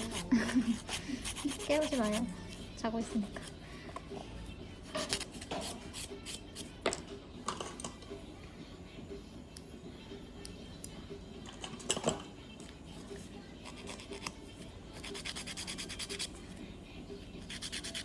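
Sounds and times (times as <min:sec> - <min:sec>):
scratchy rubbing on fingernail: 0:00.0 - 0:02.3, 0:15.0 - 0:16.3, 0:17.4 - 0:18.0
faint background music: 0:00.0 - 0:18.0.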